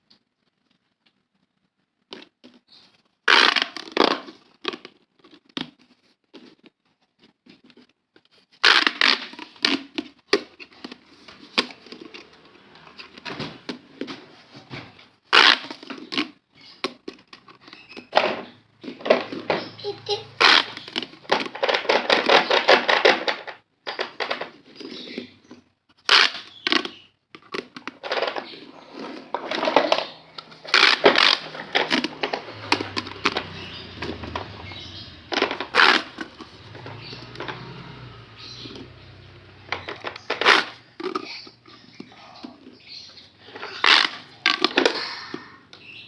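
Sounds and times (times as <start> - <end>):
plastic fidget toys clicking: 18.8 - 37.9, 38.6 - 42.8.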